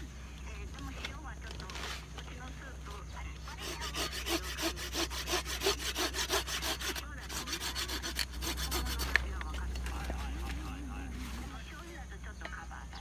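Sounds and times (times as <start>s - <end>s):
hand saw cutting wood: 3.5s - 9.3s.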